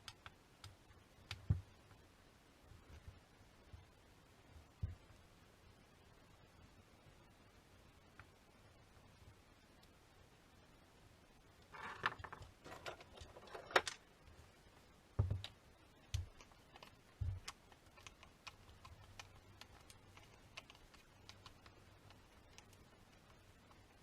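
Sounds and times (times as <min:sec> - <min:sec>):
light clicks and rattles: 0:11.8 - 0:14.0.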